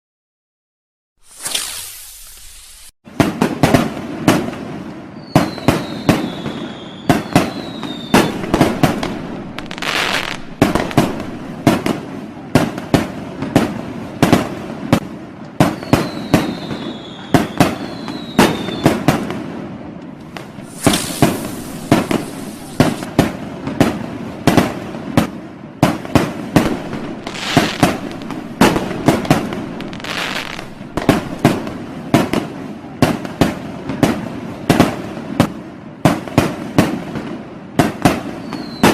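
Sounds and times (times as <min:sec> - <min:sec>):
falling firework whistles: 0:01.2 - 0:03.0, 0:05.1 - 0:11.9, 0:15.6 - 0:19.3, 0:20.3 - 0:23.2, 0:26.1 - 0:32.3, 0:38.1 - 0:38.9
hissing firework burst: 0:01.2 - 0:03.5, 0:05.2 - 0:12.2, 0:20.2 - 0:23.4, 0:26.1 - 0:32.6
firecrackers banging: 0:01.4 - 0:16.8, 0:20.2 - 0:35.5.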